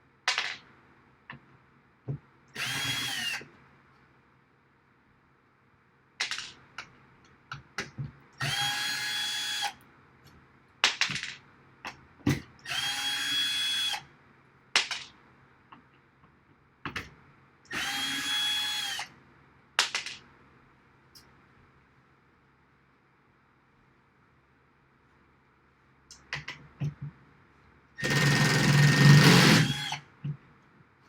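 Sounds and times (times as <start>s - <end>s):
power drill whining: 2.6s - 3.4s, 17.7s - 19.0s, 28.0s - 30.0s.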